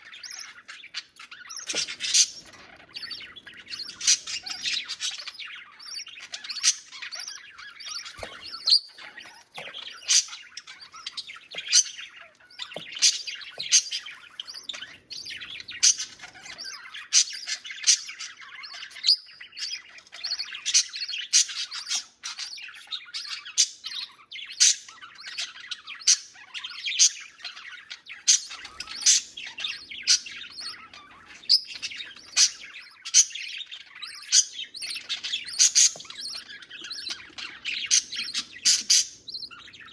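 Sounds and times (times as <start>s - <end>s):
budgie chicks chirping: 0.0s - 39.9s.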